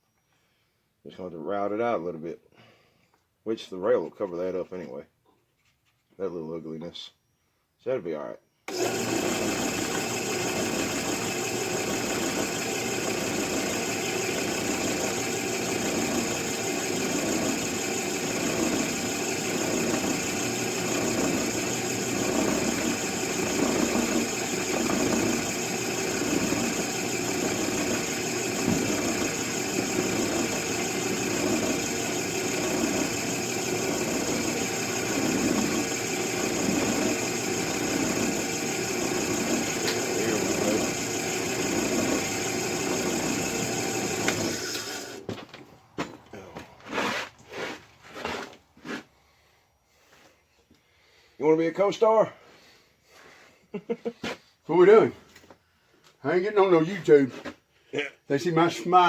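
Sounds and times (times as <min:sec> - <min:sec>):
power tool motor whining: 0:08.7 - 0:45.3.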